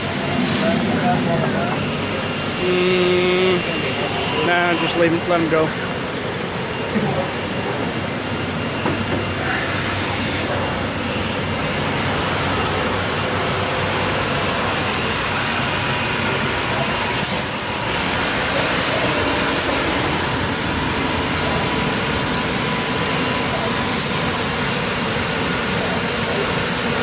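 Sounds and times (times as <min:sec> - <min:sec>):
router machine running: 0:00.0 - 0:06.0.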